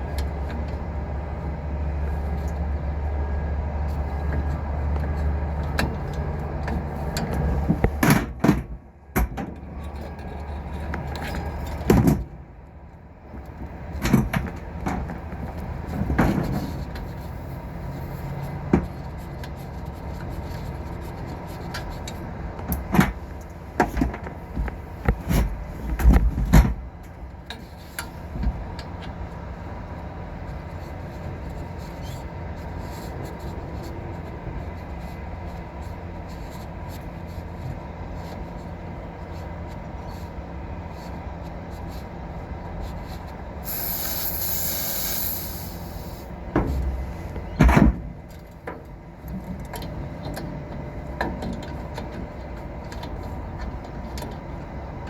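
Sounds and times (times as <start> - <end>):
knocks and clatter on metal: 13.9 - 16.8
hiss: 43.6 - 46.3.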